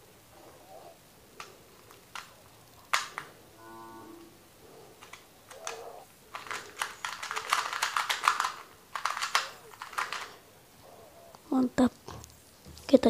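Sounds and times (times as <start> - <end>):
plastic puzzle cube clicking: 1.4 - 3.4, 5.0 - 10.4.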